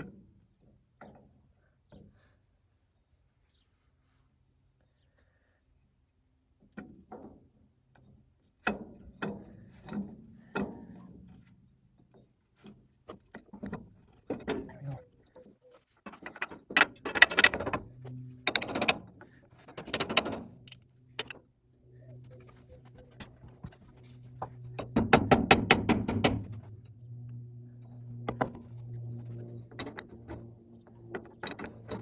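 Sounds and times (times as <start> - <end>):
metal on metal rattling: 16.1 - 21.4, 24.8 - 26.8
metal parts knocking and clinking: 16.1 - 21.4, 24.8 - 26.8, 29.7 - 32.0.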